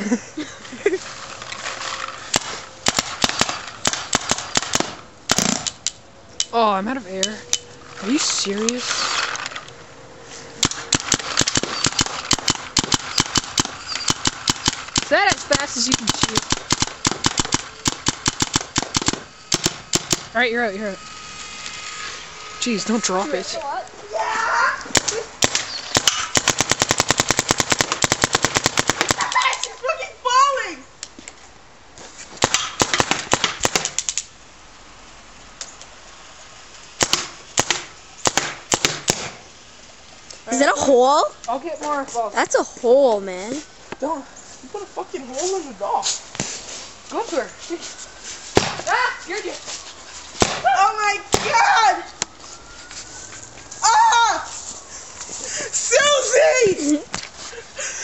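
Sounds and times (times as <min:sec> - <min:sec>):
paintball marker firing: 0:02.3 - 0:06.0, 0:10.6 - 0:20.3, 0:24.9 - 0:29.4, 0:32.4 - 0:34.2, 0:37.0 - 0:39.4, 0:50.4 - 0:50.7.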